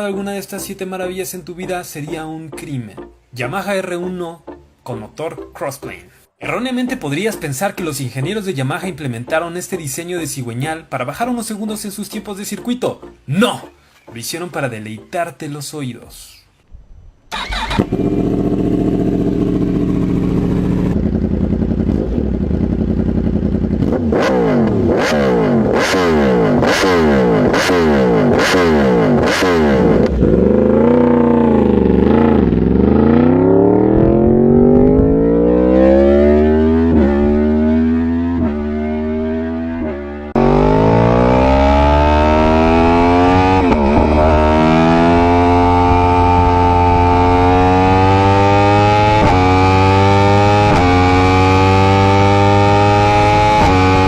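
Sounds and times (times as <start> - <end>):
motorcycle engine revving: 17.3 - 54.0.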